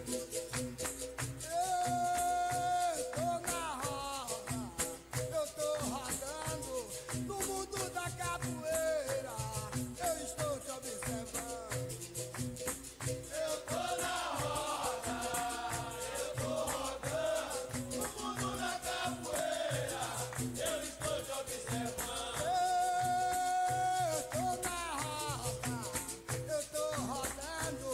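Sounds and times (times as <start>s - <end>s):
shaken rattle: 0.0s - 27.9s
rhythmic struck notes: 10.7s - 27.9s
voices singing: 13.2s - 27.9s.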